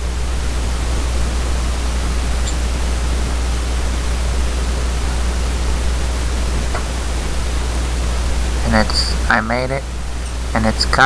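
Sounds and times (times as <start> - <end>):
low hum: 0.0 - 11.0
steady hiss: 0.0 - 11.0.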